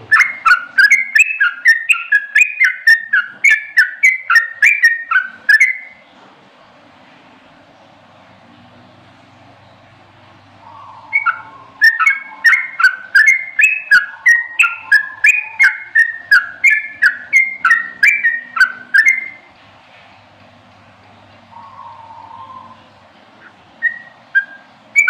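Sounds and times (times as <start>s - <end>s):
bird whistling song: 0.0s - 6.0s, 10.6s - 19.5s, 21.5s - 25.0s.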